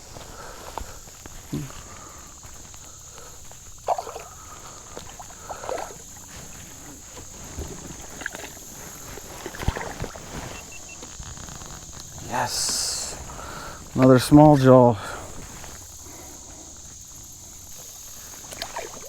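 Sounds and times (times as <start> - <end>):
water splashing: 3.2 - 11.0, 17.8 - 19.0.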